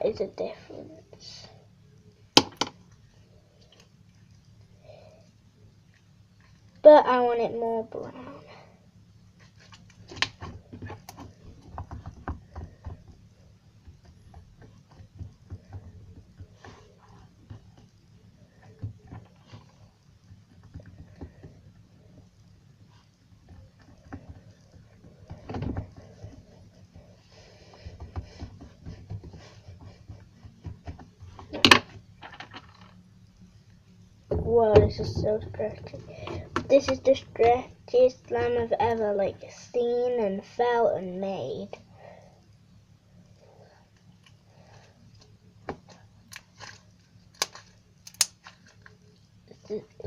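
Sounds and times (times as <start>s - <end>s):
slime sticky clicks and crackles: 46.3s - 48.8s.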